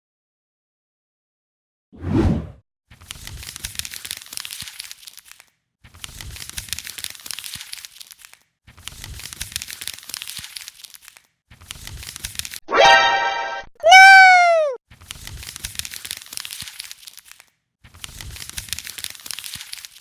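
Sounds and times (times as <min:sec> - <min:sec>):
toy crinkling and crackling: 0:02.9 - 0:12.6, 0:14.6 - 0:20.0.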